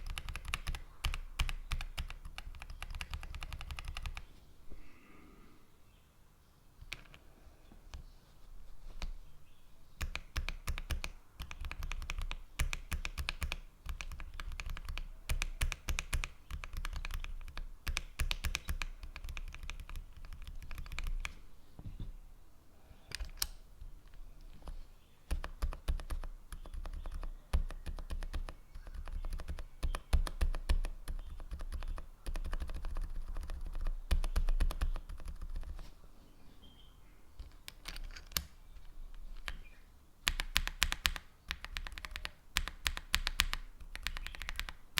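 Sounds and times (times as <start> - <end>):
mechanical keyboard typing: 0.0 - 4.3, 10.0 - 21.3, 25.3 - 35.8, 37.4 - 38.5, 40.2 - 44.9.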